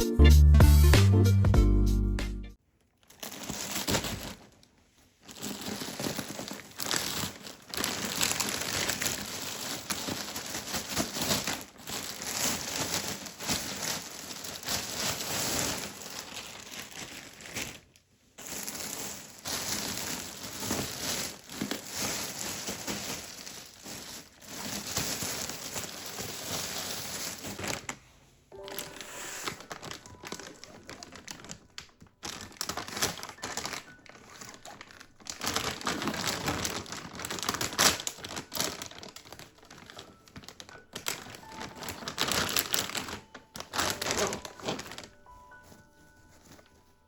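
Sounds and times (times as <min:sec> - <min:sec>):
soft piano music: 0:00.0 - 0:02.6, 0:28.5 - 0:47.0
plastic packaging crinkling: 0:02.7 - 0:47.0.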